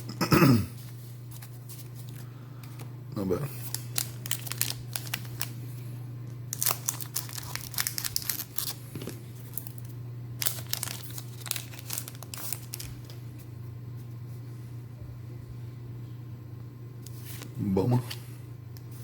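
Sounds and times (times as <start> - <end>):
foil pack crinkling and tearing: 1.4 - 5.7, 6.5 - 13.2.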